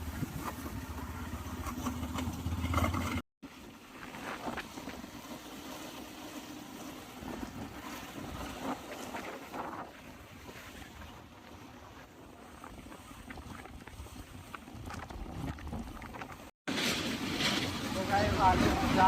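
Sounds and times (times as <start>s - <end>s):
motorcycle engine running: 0.0s - 3.2s.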